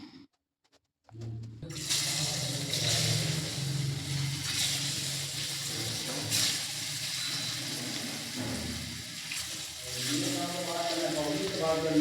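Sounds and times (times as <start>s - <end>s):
water running: 1.6s - 12.0s.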